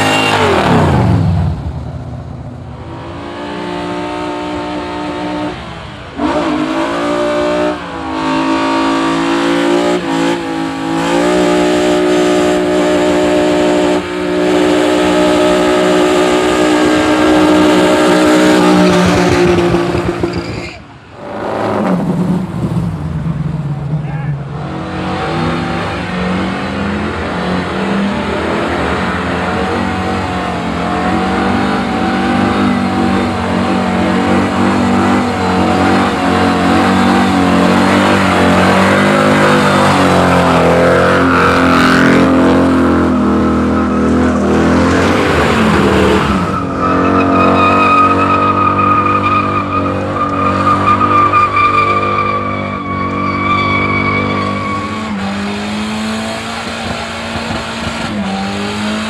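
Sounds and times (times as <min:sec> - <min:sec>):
car engine revving high: 0:00.0 - 0:01.7, 0:02.8 - 0:20.4, 0:24.5 - 0:59.0
tyres squealing: 0:46.3 - 0:55.3.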